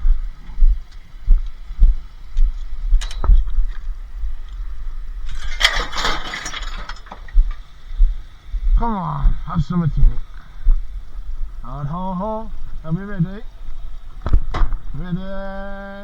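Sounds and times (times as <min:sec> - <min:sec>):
rattling and clinking: 0:05.2 - 0:07.7.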